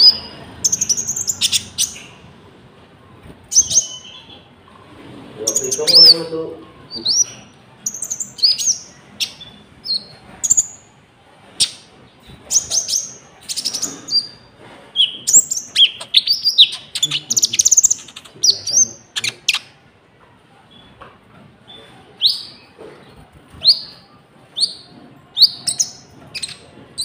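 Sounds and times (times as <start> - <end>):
songbird singing sharp chirps: 0.0 - 2.3, 3.5 - 4.5, 5.4 - 10.9, 12.5 - 19.8, 23.6 - 27.0.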